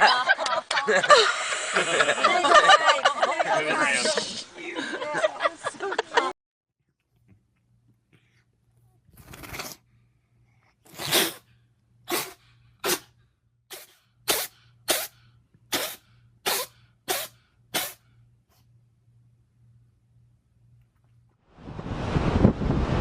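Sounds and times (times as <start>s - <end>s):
animal sneezing: 10.9s - 11.5s, 12.1s - 13.1s, 13.7s - 18.0s.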